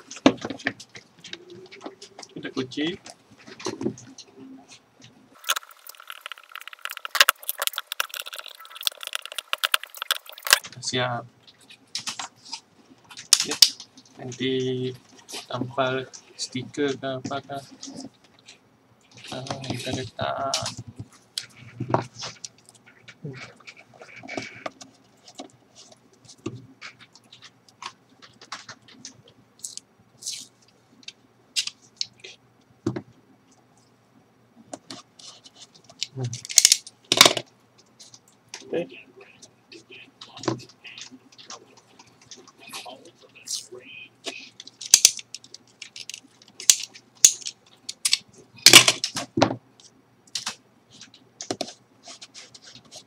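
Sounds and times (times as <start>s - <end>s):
small parts and tools handled: 0.0s - 10.7s, 34.7s - 38.3s, 44.2s - 53.0s.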